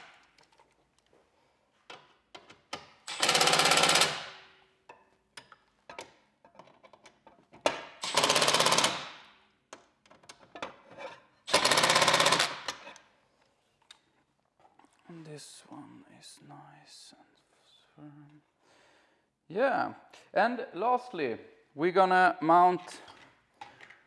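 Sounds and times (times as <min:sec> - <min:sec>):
impact driver hammering: 0:03.1 - 0:04.4.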